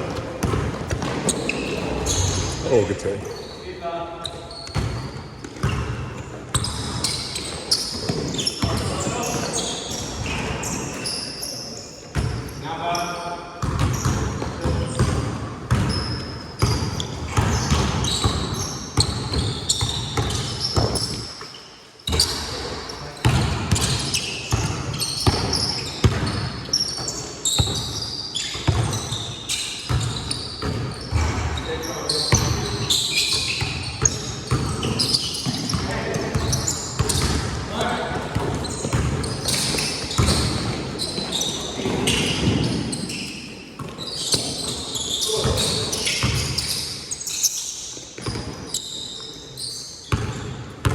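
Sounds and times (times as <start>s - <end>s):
sneakers squeaking on floor: 0.0s - 50.9s
basketball bouncing on court: 0.1s - 2.7s, 4.6s - 10.4s, 12.1s - 12.5s, 13.6s - 21.3s, 22.1s - 29.3s, 29.9s - 42.9s, 43.8s - 46.8s, 50.1s - 50.9s.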